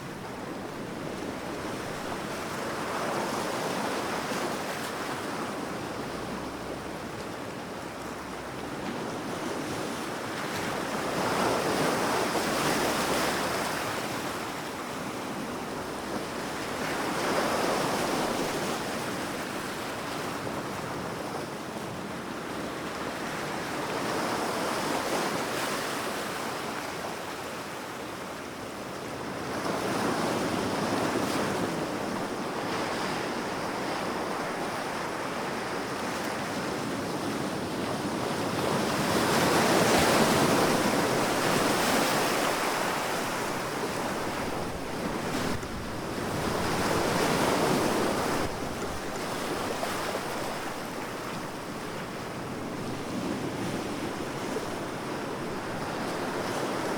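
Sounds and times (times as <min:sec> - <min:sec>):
wind: 0:00.0 - 0:56.9
ocean waves breaking: 0:37.8 - 0:56.9.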